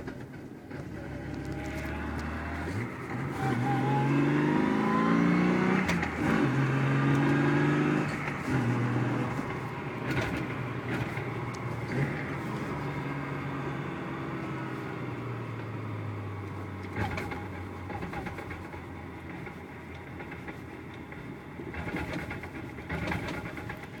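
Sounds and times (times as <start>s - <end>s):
driveline droning: 1.2s - 18.1s.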